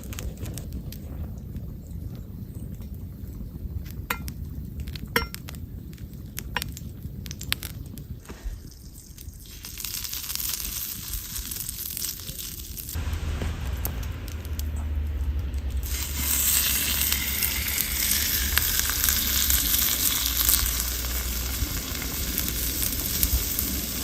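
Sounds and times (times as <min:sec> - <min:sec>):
fire rumbling low: 0:00.0 - 0:24.0
food sizzling: 0:02.2 - 0:24.0
cookware clinking: 0:05.2 - 0:05.4.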